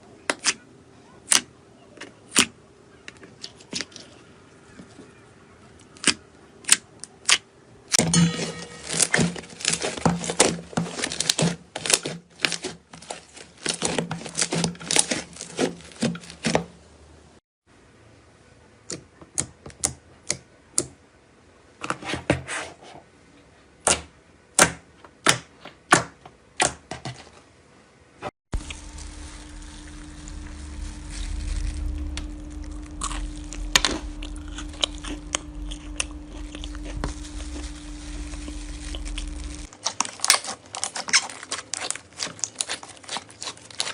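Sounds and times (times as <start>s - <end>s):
steady low hum: 8.0s - 9.8s, 28.5s - 39.7s.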